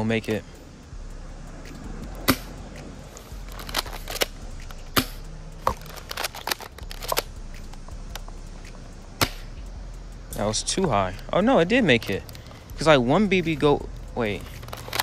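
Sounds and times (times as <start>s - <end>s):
airsoft shotgun clicks and snaps: 1.6s - 9.7s, 14.0s - 15.0s.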